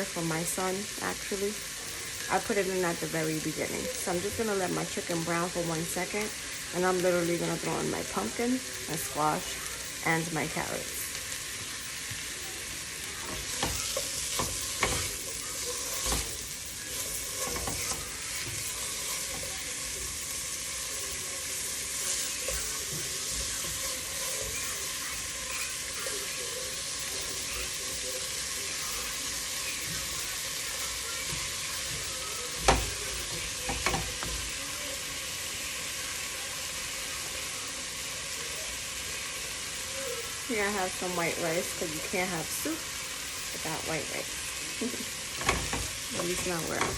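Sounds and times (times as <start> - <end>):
chicken sizzling in a pot: 0.0 - 46.9
utensil stirring and knocking pot: 11.5 - 26.0, 28.8 - 34.6, 45.3 - 46.9.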